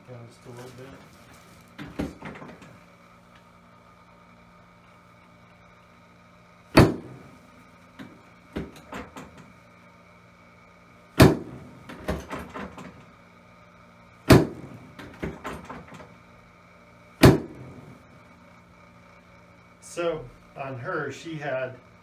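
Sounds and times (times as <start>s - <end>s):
smaller clacks and rattles: 0.6s - 2.8s, 11.2s - 13.0s
adjusting table clacking down: 6.8s - 7.4s, 8.0s - 9.5s, 11.2s - 13.0s, 14.3s - 16.1s, 17.2s - 18.0s.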